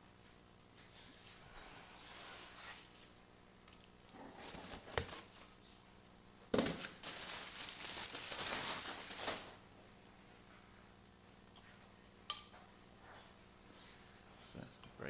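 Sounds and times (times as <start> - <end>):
rustling and scraping: 0.8 - 3.1, 4.1 - 5.6.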